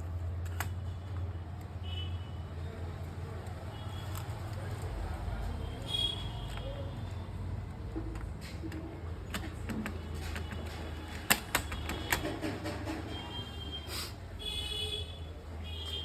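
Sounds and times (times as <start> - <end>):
parts clicking and knocking: 0.0 - 1.2, 7.7 - 13.3.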